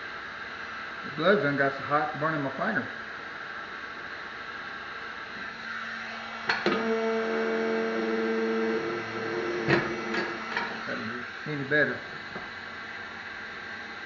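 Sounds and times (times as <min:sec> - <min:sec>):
heat gun humming: 0:05.2 - 0:14.0.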